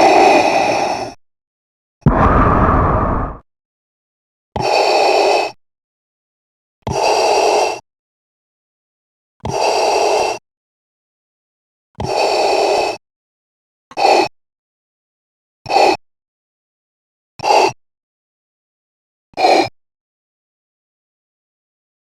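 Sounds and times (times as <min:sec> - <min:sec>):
breathing through a regulator: 0:00.0 - 0:01.2, 0:04.6 - 0:05.6, 0:06.9 - 0:07.8, 0:09.5 - 0:10.4, 0:12.0 - 0:13.0.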